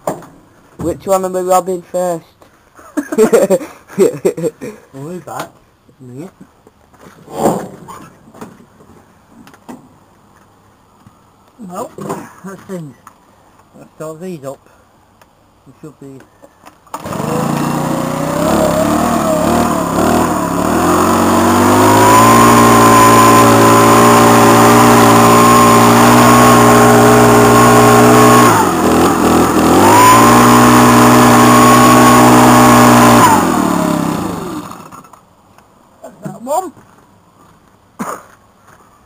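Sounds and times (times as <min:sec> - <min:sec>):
leaf blower engine revving: 0:16.9 - 0:35.0.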